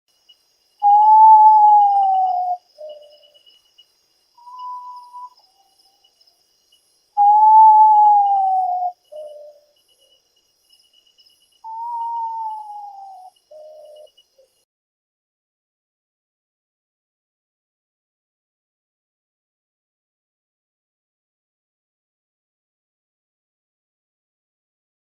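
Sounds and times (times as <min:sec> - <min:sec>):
insects trilling: 0:00.1 - 0:14.7
potoo mournful whistle: 0:00.8 - 0:03.2, 0:04.4 - 0:05.7, 0:07.2 - 0:09.6, 0:11.6 - 0:14.1.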